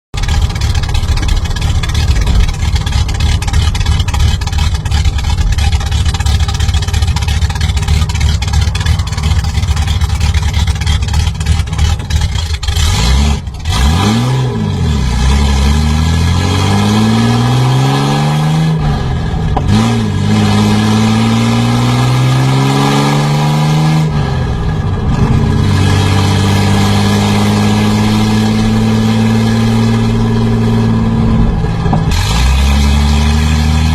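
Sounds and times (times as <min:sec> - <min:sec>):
engine idling and revving: 0:00.1 - 0:33.9.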